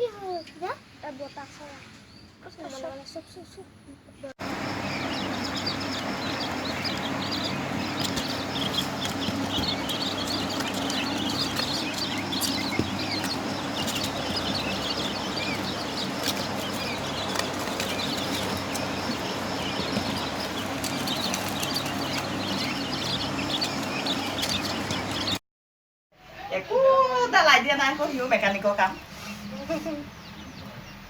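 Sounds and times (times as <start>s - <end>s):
quail chirping: 4.4s - 25.4s, 27.5s - 31.0s.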